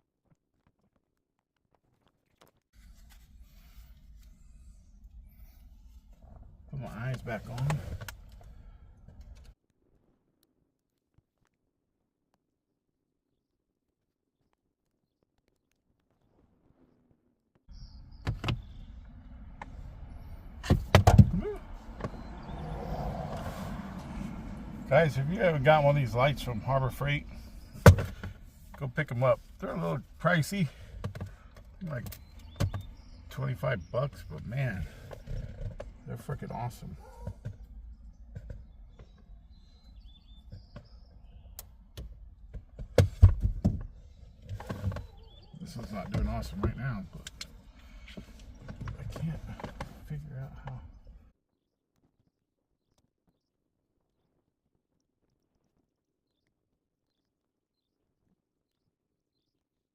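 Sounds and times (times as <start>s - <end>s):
low steady rumble: 17.8s - 42.5s
knocks and thuds of tools on trim: 27.8s - 28.3s.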